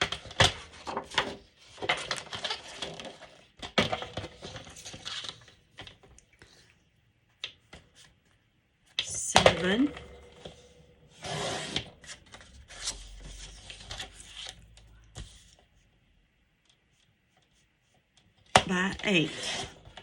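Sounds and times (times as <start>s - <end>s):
paper rustling: 0.0s - 6.7s, 9.6s - 15.6s.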